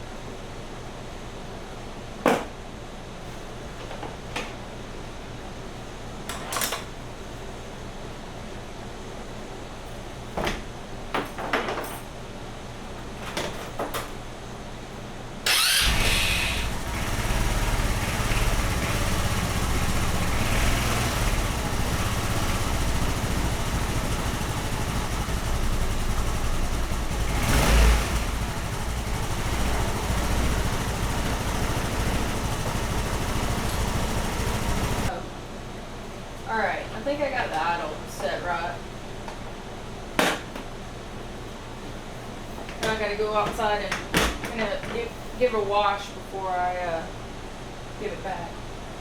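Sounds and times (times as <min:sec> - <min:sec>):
scooter engine idling: 0:15.5 - 0:35.1.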